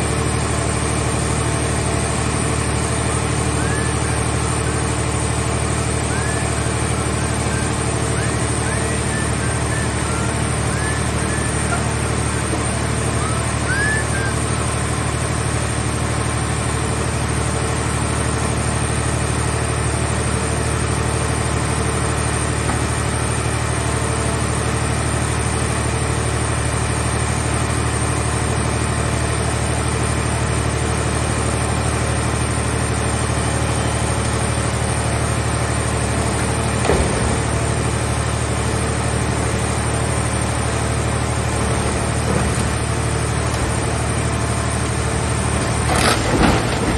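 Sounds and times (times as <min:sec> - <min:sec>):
hydraulic power unit drone: 0:00.0 - 0:46.9.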